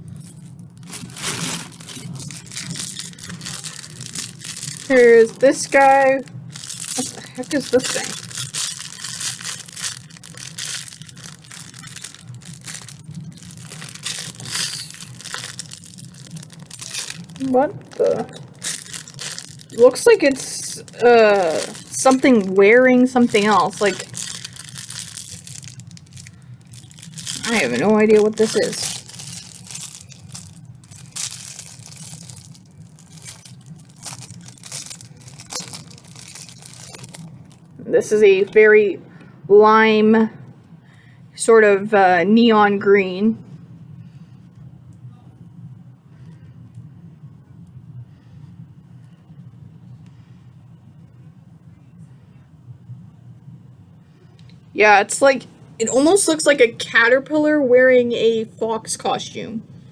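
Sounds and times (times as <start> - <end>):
plastic packaging crinkling: 0.0 - 37.8, 55.8 - 56.8
steady low hum: 0.0 - 59.9.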